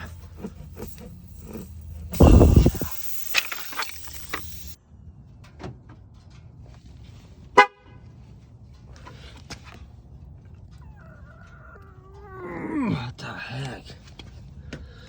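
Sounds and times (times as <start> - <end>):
car horn toot: 7.6 - 8.0.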